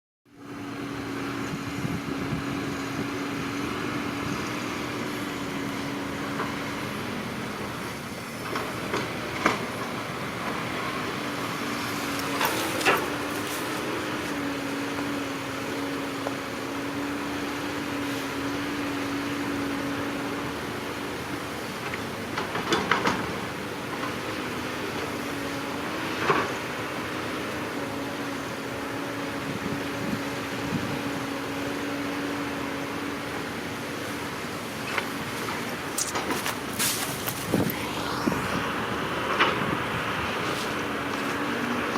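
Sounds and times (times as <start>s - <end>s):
diesel engine humming: 0.3s - 41.9s.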